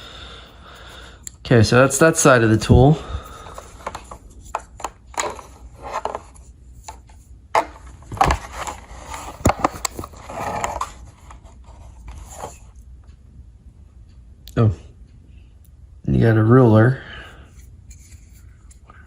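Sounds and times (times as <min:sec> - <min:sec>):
multi-tool rubbing and scraping: 0:17.5 - 0:18.9.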